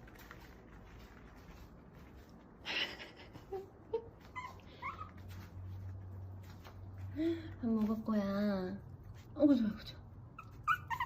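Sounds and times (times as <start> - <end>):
dog whimpering: 4.0 - 5.3, 10.3 - 11.0.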